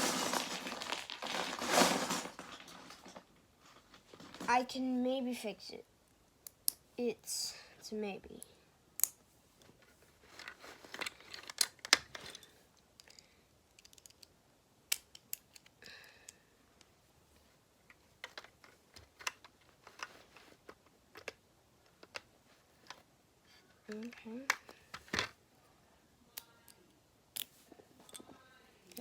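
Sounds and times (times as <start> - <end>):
rustling: 0.0 - 4.6, 9.5 - 12.6, 17.3 - 21.3
plastic bricks clicking: 13.0 - 14.3.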